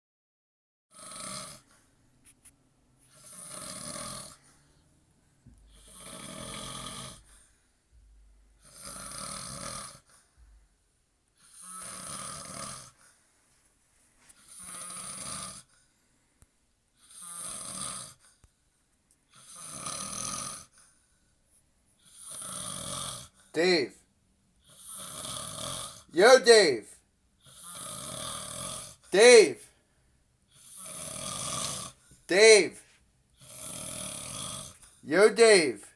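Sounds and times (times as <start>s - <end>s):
man snoring: 0.9s - 1.7s, 3.1s - 4.4s, 5.7s - 7.4s, 8.6s - 10.1s, 11.4s - 13.0s, 14.5s - 15.7s, 17.0s - 18.2s, 19.3s - 20.7s, 22.0s - 23.9s, 24.7s - 26.8s, 27.4s - 29.6s, 30.6s - 32.8s, 33.4s - 35.8s.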